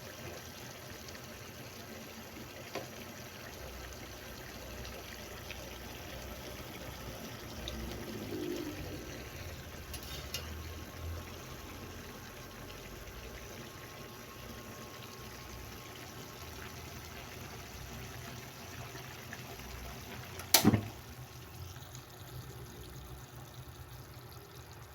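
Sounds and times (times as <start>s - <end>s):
faint liquid sound: 0.0s - 24.9s.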